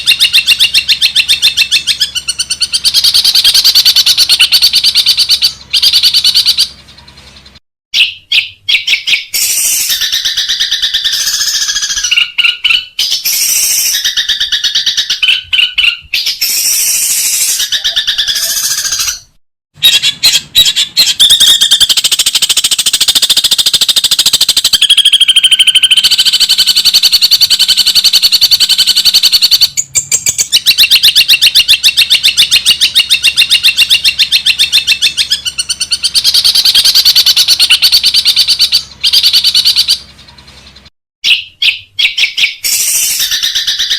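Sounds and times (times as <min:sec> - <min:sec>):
bird chattering and rattling song: 0:00.0 - 0:43.9.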